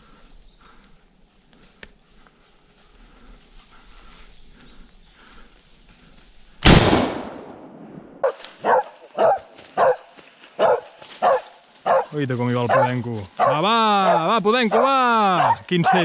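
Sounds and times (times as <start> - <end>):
gunshot with echo: 6.6 - 8.1
dog barking: 8.2 - 16.0.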